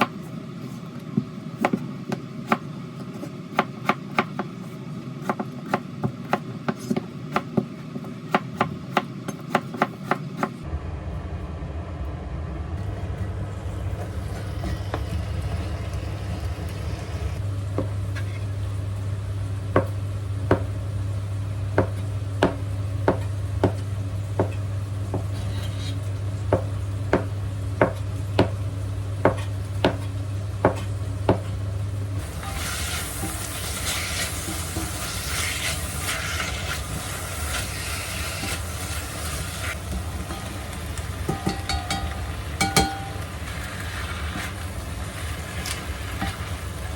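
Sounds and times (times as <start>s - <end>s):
knife chopping on cutting board: 1.6s - 4.6s, 5.2s - 10.5s, 29.2s - 31.5s
steady low hum: 10.6s - 46.9s
frying food sizzling: 12.8s - 46.9s.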